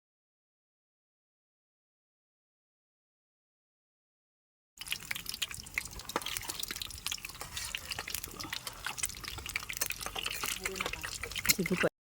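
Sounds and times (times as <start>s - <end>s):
water dripping and splashing: 4.8s - 11.9s.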